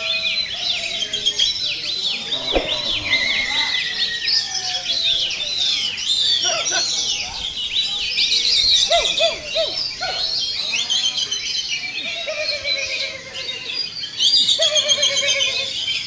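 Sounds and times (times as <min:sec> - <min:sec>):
songbirds singing: 0:00.0 - 0:16.0
lower swooping bird notes: 0:01.1 - 0:04.3.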